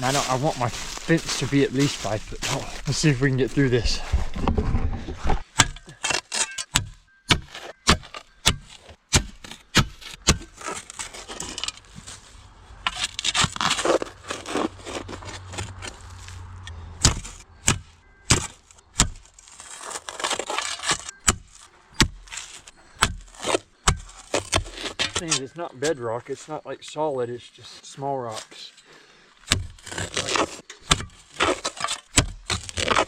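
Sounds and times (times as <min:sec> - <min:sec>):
shovel scraping through rocks: 0:00.0 - 0:06.8, 0:07.4 - 0:16.4, 0:18.3 - 0:26.4, 0:29.5 - 0:33.0.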